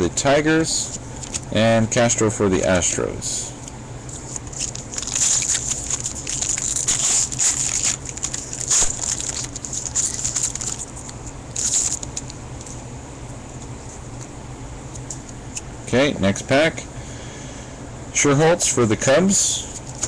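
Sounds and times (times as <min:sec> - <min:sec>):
foil wrapper crinkling: 0:01.1 - 0:01.5, 0:04.1 - 0:12.8, 0:19.7 - 0:20.0.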